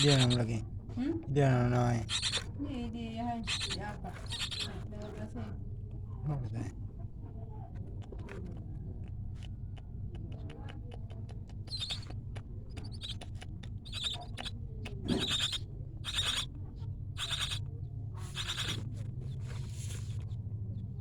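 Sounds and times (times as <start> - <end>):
starling chicks harsh calls: 0.0 - 0.5, 2.0 - 2.6, 3.3 - 5.2, 10.2 - 19.0
steady low hum: 0.0 - 21.0.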